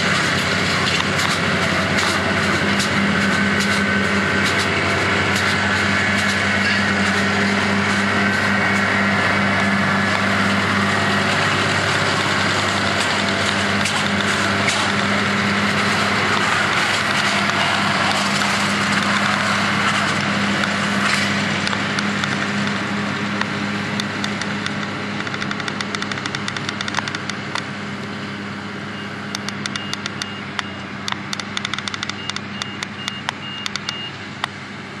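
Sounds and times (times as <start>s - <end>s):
diesel engine running: 0.0s - 35.0s
sharp clicks: 23.4s - 27.6s, 29.3s - 34.5s.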